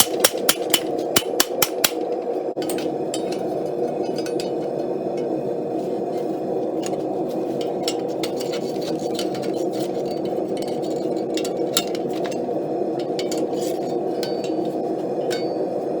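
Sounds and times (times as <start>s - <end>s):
metallic clinks and taps: 9.2s - 15.6s.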